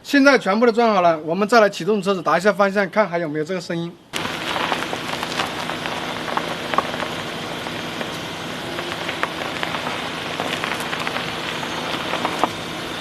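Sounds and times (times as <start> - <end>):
car engine idling hiss: 4.2 - 13.0.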